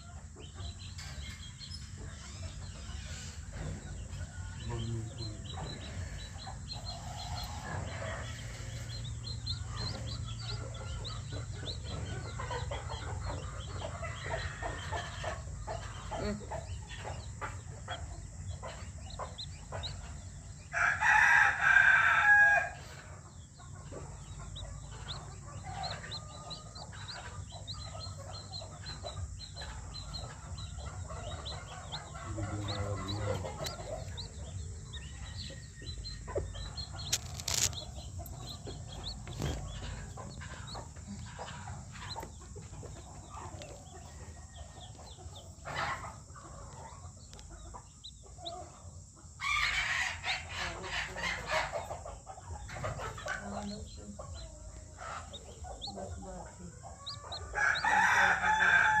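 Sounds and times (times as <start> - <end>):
chickens clucking: 0.0 - 59.0
rooster crowing: 20.7 - 23.1, 57.0 - 59.0.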